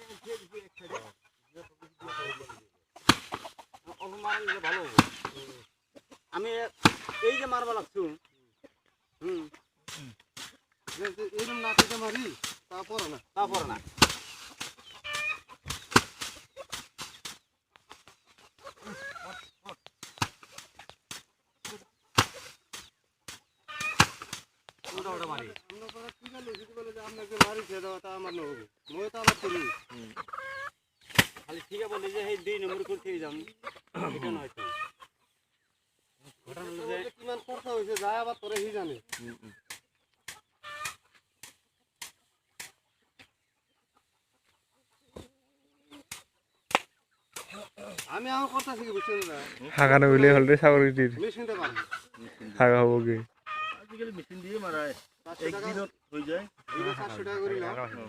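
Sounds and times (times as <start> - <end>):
poultry calling: 0.0 - 10.6, 11.2 - 58.0
rice sheaves thwacked by hand: 3.0 - 3.4, 9.9 - 13.1, 13.9 - 14.8, 15.7 - 17.4, 20.0 - 26.4, 31.1 - 31.4, 46.1 - 48.7.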